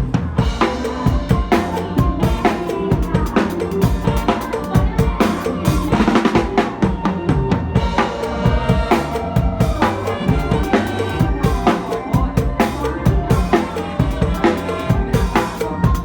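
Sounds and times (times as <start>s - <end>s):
backing music with bass line: 0.0s - 16.0s
drum kit playing fast rhythm: 0.0s - 16.0s.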